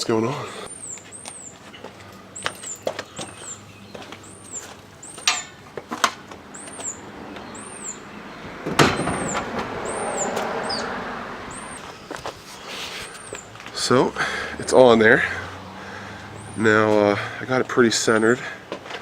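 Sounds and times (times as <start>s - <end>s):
metal knocks and clinks: 5.2s - 5.6s, 8.6s - 9.6s
loud metal clunk: 8.6s - 9.8s.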